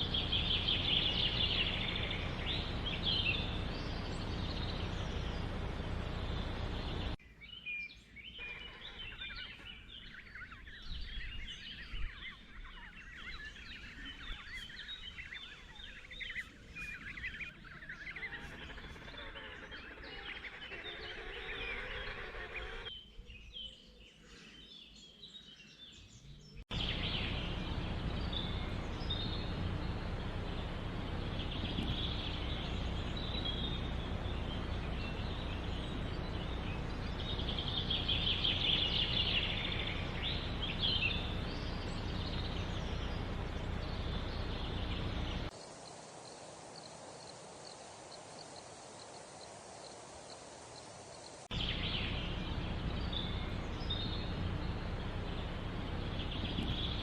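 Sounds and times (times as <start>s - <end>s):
birds chattering: 0.0s - 25.1s, 25.9s - 45.6s, 51.4s - 57.0s
loud steady noise: 26.8s - 45.5s, 51.5s - 57.0s.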